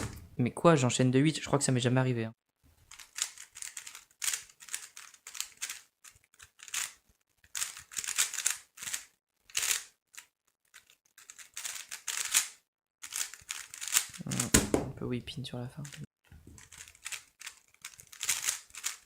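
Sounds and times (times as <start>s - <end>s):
speed cube plastic clicking: 2.9s - 14.6s, 16.6s - 19.0s.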